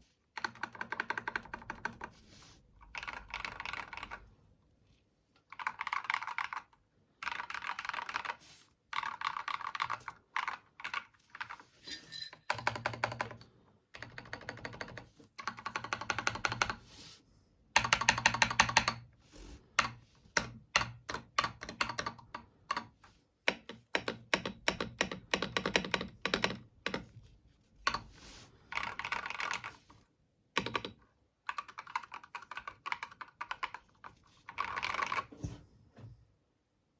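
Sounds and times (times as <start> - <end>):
mechanical keyboard typing: 0.4 - 2.1, 2.8 - 4.3, 5.5 - 11.6, 12.5 - 13.4, 14.0 - 16.8, 17.8 - 19.0, 19.8 - 22.9, 23.5 - 27.0, 28.7 - 29.8, 30.6 - 35.3.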